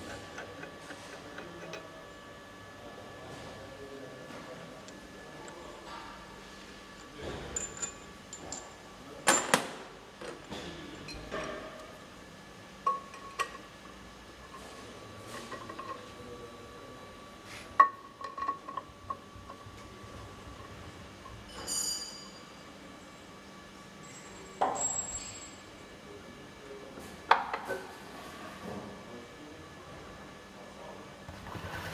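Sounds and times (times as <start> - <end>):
metal tools clinking and knocking: 7.0 - 9.6.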